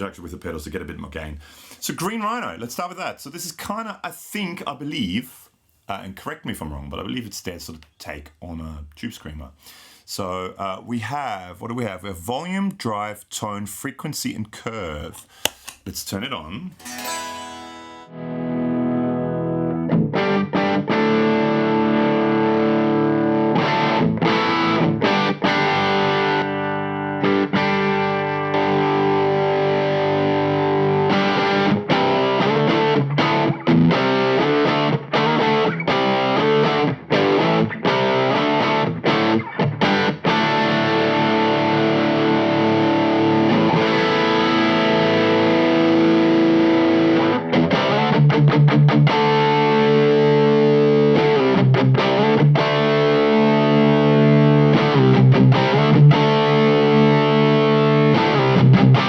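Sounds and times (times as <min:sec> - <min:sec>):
distorted electric guitar: 0:16.8 - 0:59.0.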